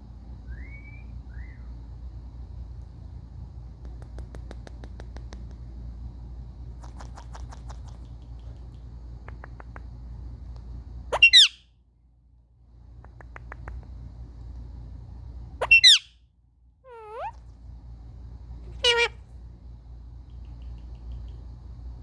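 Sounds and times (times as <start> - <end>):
light quick clicks: 3.8 - 5.7, 13.0 - 14.0
parakeet squawking: 11.1 - 11.6, 15.6 - 16.1, 16.9 - 17.4, 18.6 - 19.2.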